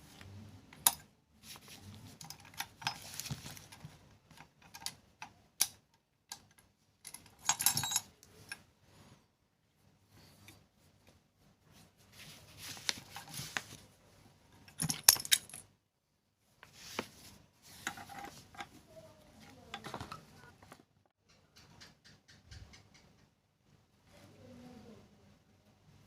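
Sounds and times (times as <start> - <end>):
metal tools clinking and scraping: 7.1 - 8.6, 17.7 - 18.7.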